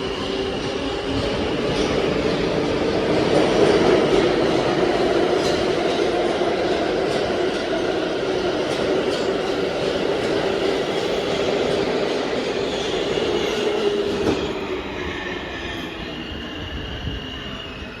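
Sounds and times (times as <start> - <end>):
subway train rumbling: 0.0 - 18.0
high wheel squeal: 12.4 - 18.0.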